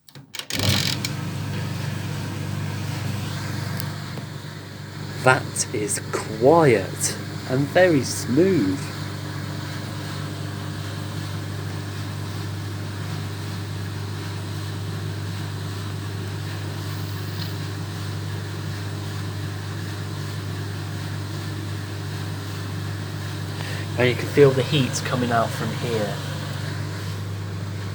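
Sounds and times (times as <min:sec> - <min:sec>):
tumble dryer running: 0:00.4 - 0:27.9.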